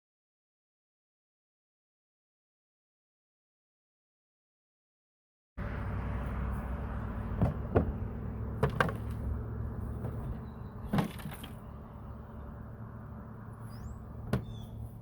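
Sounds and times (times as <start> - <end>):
low background rumble: 5.6 - 15.0
mailbox hardware knocks and clicks: 10.8 - 11.6.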